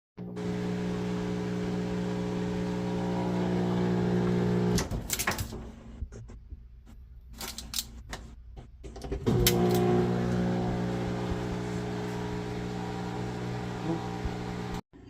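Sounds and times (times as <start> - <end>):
washer drain pump humming: 0.2 - 5.6, 8.9 - 14.8.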